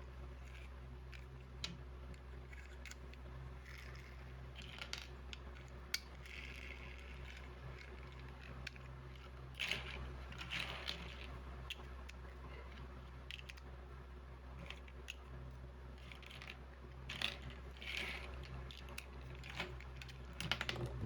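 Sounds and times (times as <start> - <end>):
steady low hum: 20.3 - 21.0.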